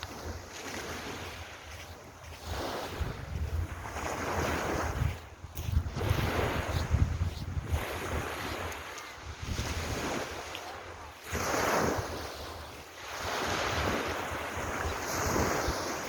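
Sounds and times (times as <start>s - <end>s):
wind buffeting microphone: 2.3s - 12.5s.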